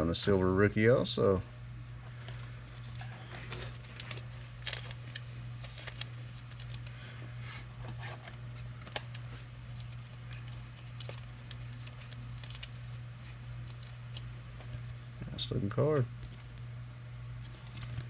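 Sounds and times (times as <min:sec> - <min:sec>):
steady low hum: 0:00.0 - 0:18.0
trading cards flipping: 0:02.1 - 0:06.9, 0:07.9 - 0:14.8, 0:17.4 - 0:18.0
card stock clicks and rustles: 0:02.1 - 0:07.0, 0:07.7 - 0:15.0, 0:16.2 - 0:16.7, 0:17.4 - 0:18.0.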